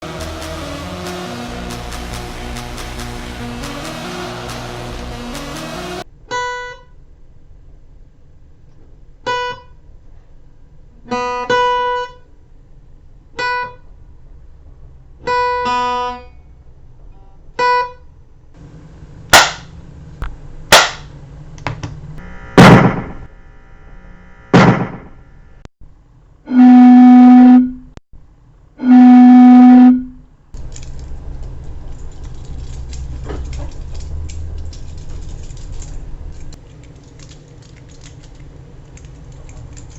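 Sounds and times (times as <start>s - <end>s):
loud low buzzing tones: 0.0s - 6.0s, 22.1s - 25.7s
short pitched tones: 22.2s - 25.6s, 26.5s - 27.9s, 28.8s - 30.2s.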